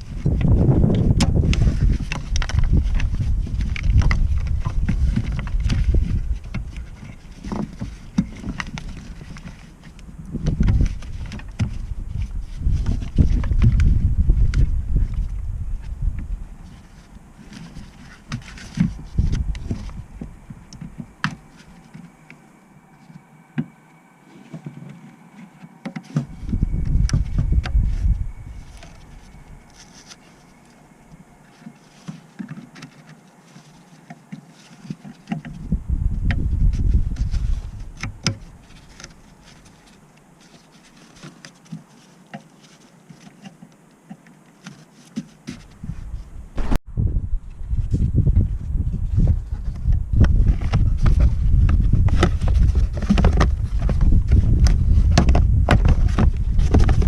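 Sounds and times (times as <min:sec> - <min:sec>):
low rumble: 0:18.9 - 0:31.6, 0:45.8 - 0:57.0.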